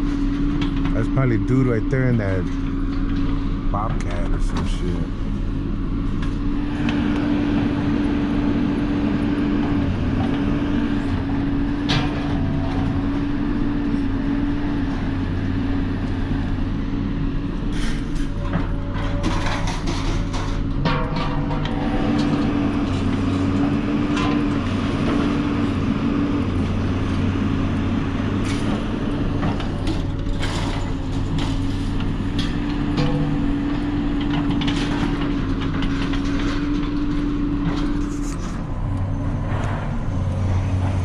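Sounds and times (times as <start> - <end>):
clanks and knocks: 18.1 - 23.4.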